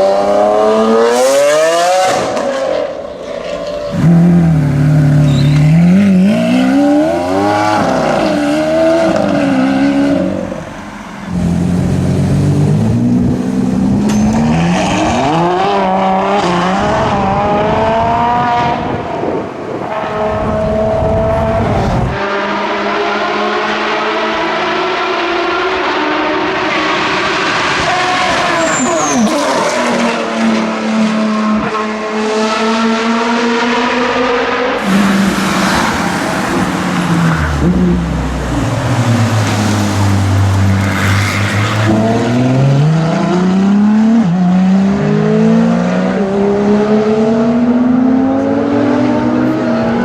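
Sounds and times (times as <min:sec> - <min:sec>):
supercar engines at high revs: 0:39.0 - 0:50.0.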